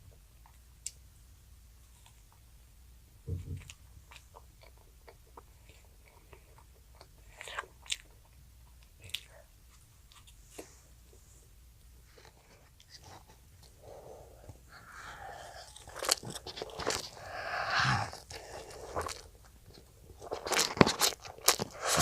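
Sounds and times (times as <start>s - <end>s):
soft low thump: 3.3s - 3.7s
child chewing food: 3.3s - 22.0s.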